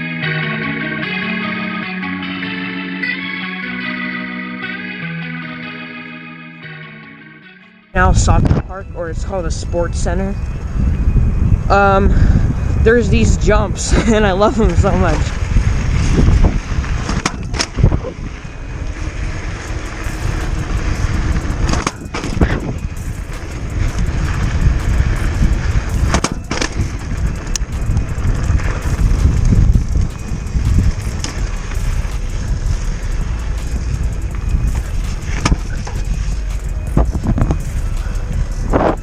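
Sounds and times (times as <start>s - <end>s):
wind buffeting microphone: 8.0s - 39.0s
tyres rolling over ground: 14.0s - 39.0s
bike knocks and clatters: 16.9s - 18.2s, 19.7s - 39.0s.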